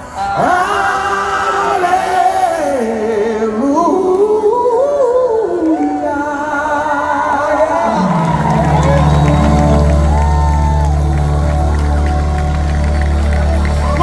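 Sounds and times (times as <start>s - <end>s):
sustained keyboard chords: 7.8s - 14.0s.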